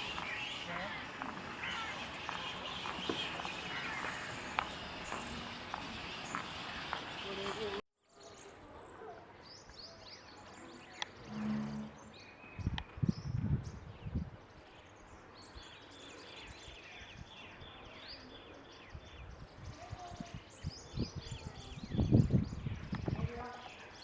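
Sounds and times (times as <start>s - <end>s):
birds chirping and calling: 0.0s - 8.6s.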